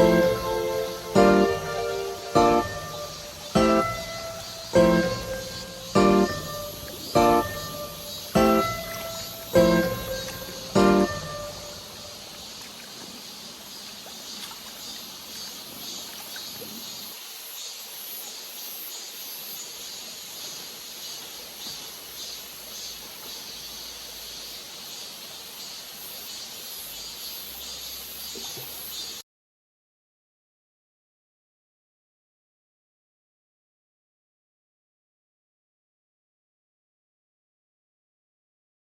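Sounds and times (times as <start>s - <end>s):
stream flowing: 0.0s - 29.2s.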